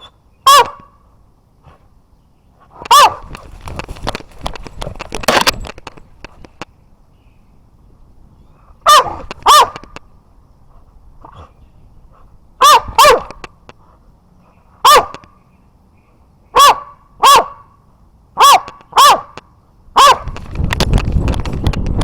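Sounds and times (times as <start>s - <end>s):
dog barking: 0.4s - 0.9s, 2.8s - 3.3s, 8.8s - 9.8s, 12.6s - 13.4s, 14.8s - 15.2s, 16.5s - 17.7s, 18.4s - 19.4s, 20.0s - 20.3s.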